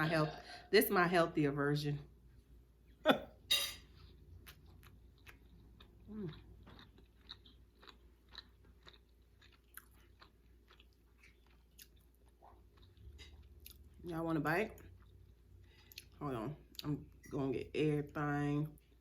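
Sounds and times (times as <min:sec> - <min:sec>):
faint chewing with mouth clicks: 0:03.9 - 0:14.0, 0:14.8 - 0:17.2.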